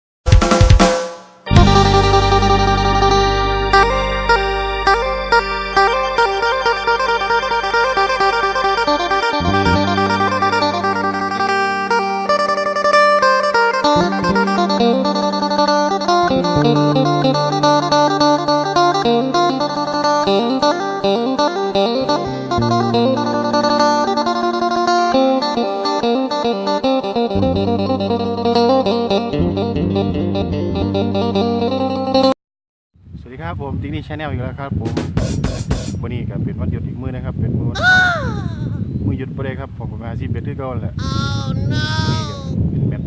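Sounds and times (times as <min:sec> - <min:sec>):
sustained bass line: 0:01.5 - 0:25.6, 0:27.3 - 0:32.3, 0:40.9 - 0:42.8
plucked guitar melody: 0:01.5 - 0:32.3, 0:41.0 - 0:42.7.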